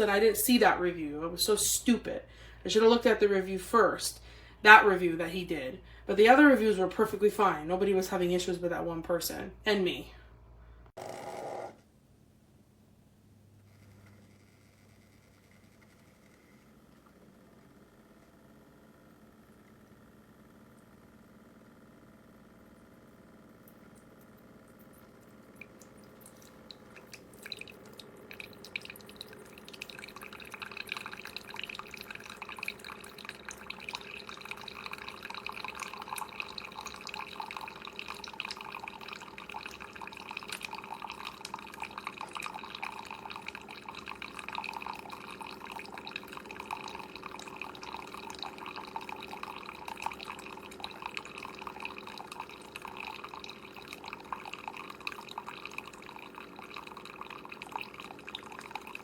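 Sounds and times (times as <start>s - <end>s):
coffee dripping into a cup: 22.6s - 59.0s.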